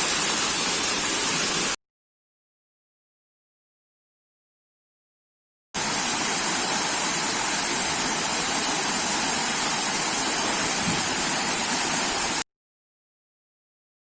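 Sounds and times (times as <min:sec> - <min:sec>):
waterfall rushing: 0:00.0 - 0:01.8, 0:05.8 - 0:12.4.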